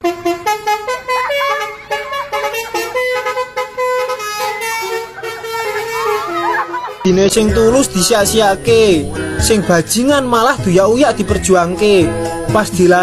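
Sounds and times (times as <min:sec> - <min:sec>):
bus horn playing a melody: 0:00.0 - 0:08.0.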